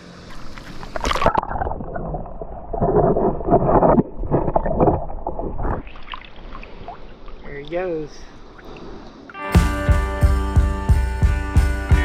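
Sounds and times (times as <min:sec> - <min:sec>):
water splashing and sloshing: 0:00.0 - 0:09.4.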